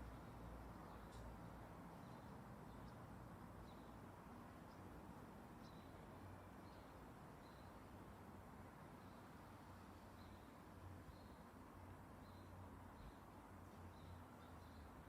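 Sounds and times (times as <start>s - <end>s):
faint outdoor background hiss: 0.0s - 15.0s.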